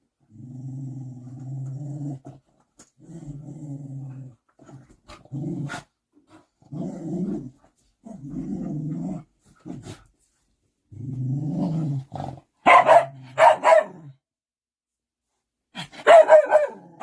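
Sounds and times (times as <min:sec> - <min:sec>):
dog growling: 0:00.2 - 0:10.0, 0:10.9 - 0:12.5
dog barking: 0:12.6 - 0:14.1, 0:15.9 - 0:17.0.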